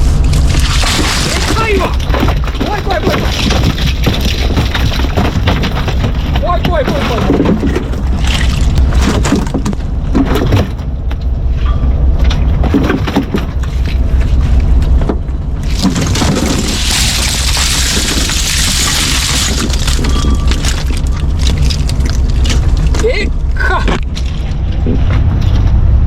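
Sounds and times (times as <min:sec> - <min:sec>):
boat engine humming: 0:00.0 - 0:26.0
knocks and clatter on deck: 0:00.9 - 0:11.2, 0:12.2 - 0:14.0, 0:15.0 - 0:22.6.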